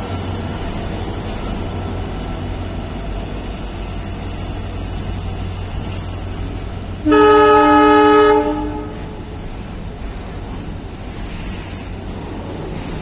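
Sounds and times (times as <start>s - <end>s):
diesel locomotive engine humming: 0.0s - 13.0s
locomotive air horn blast: 7.0s - 9.2s.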